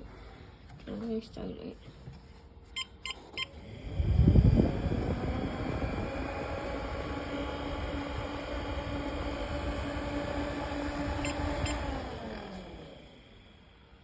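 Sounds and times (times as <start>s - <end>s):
siren rotor tone: 3.4s - 13.7s
electric siren motor rumble: 3.4s - 14.0s.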